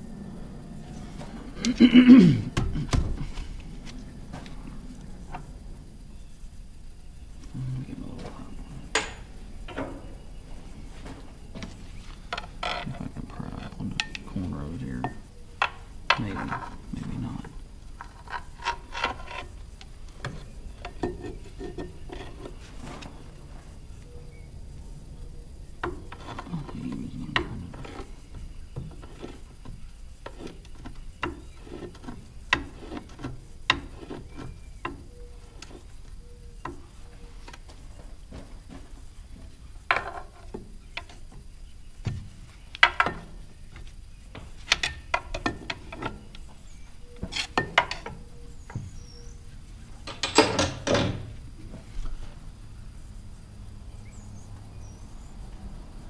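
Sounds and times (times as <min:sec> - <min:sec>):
metal rattle: 0:49.9 - 0:51.4.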